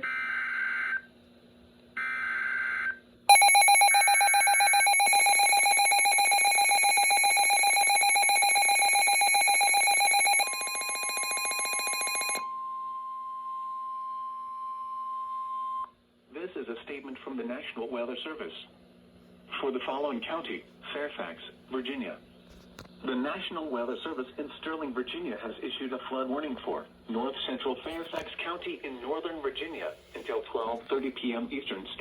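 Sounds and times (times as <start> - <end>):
steady single-pitch alert tone: 3.3 - 12.6.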